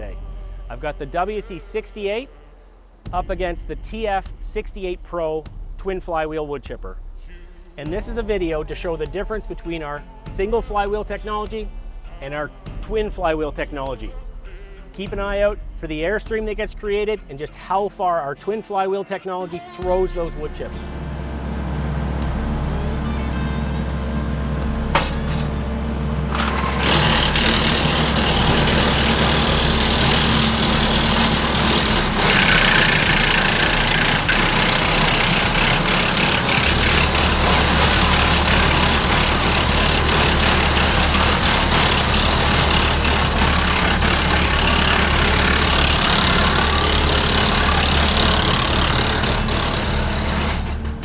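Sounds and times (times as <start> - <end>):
tractor engines running: 0.0 - 5.0, 7.5 - 17.8, 20.1 - 51.0
wood chippers blowing chips: 20.4 - 51.0.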